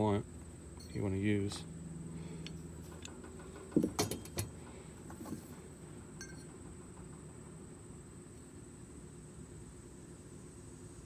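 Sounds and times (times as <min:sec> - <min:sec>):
small metal parts clinking: 0:03.8 - 0:04.6.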